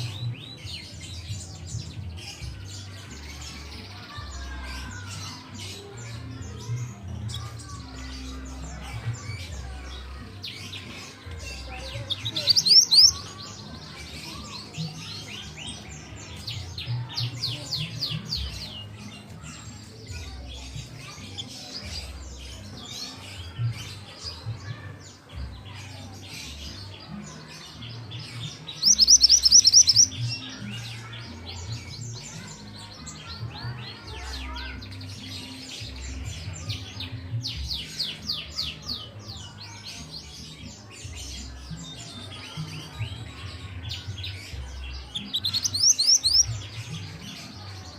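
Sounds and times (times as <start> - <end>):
bird singing high chirps: 12.0 - 13.7, 28.7 - 30.4, 45.1 - 46.8.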